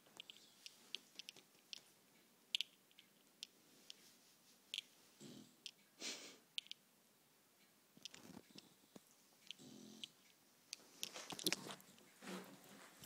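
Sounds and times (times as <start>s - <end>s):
dog snoring: 9.6s - 10.1s.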